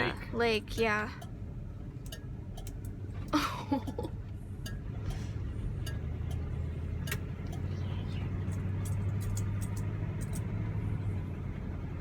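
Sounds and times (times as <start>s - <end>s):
car engine drone: 0.0s - 12.0s
road noise: 0.0s - 12.0s.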